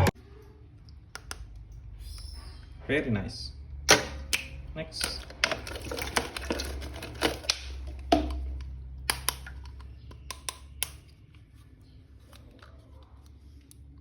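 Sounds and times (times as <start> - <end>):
plastic clicks and taps: 8.1 - 11.1.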